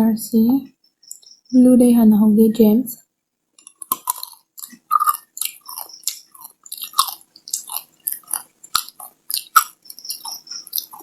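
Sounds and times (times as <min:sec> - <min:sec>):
chewing with mouth clicks: 0:03.6 - 0:11.0.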